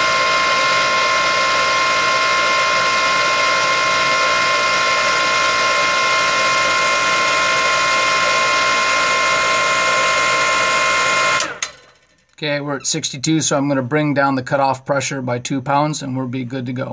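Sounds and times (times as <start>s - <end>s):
water pump whining: 0.0s - 13.2s.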